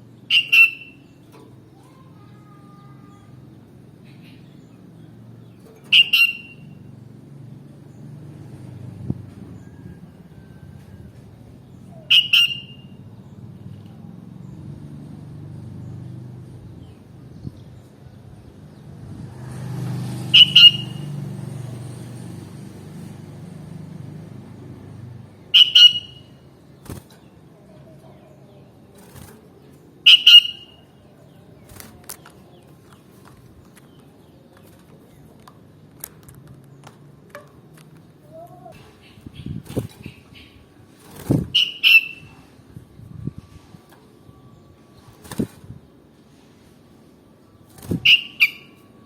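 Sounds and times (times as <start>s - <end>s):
road traffic rumble: 0.0s - 49.0s
bird calls: 0.2s - 6.8s, 11.7s - 13.0s, 25.5s - 35.5s, 38.2s - 42.6s, 47.5s - 49.0s.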